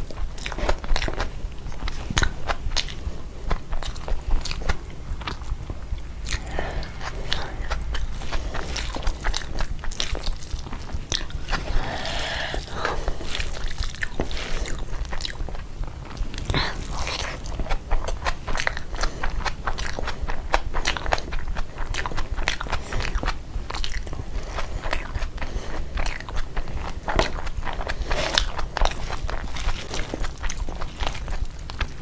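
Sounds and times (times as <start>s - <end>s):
close chewing with wet clicks: 0.0s - 32.0s
mouth smacking: 2.1s - 20.1s.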